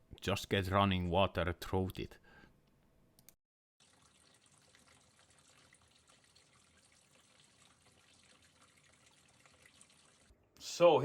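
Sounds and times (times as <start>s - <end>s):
tap water trickling and dripping: 3.8s - 10.4s.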